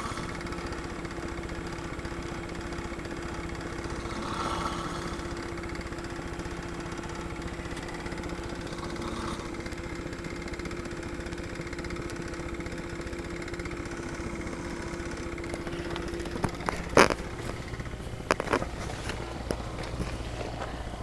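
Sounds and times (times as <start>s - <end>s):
woman snoring: 0.0s - 0.9s, 3.2s - 11.2s, 12.7s - 21.0s.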